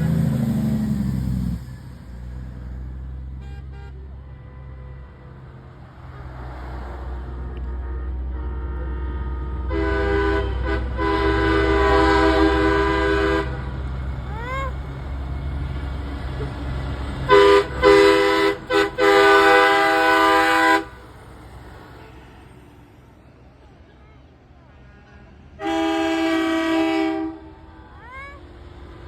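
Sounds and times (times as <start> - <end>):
diesel engine idling: 0.0 - 24.4
truck air horn blasts: 3.2 - 14.9, 17.2 - 21.2, 24.7 - 28.5.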